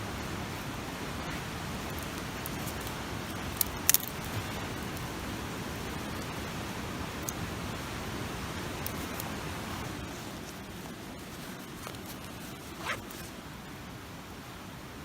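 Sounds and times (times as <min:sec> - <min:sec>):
campfire hissing: 0:00.4 - 0:13.4
campfire crackles and pops: 0:01.8 - 0:05.1.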